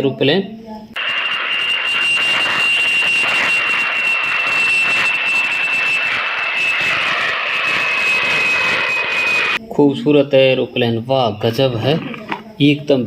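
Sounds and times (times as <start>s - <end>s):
rushing hiss: 1.0s - 9.6s
toy jet engine whine: 1.0s - 9.6s.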